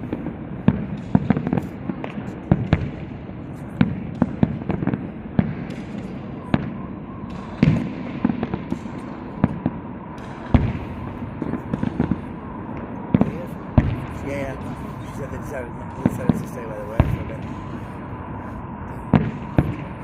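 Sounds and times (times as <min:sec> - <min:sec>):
fireworks bangs and cracks: 0:00.0 - 0:20.0
faint steady whistle: 0:06.0 - 0:11.3, 0:12.2 - 0:20.0.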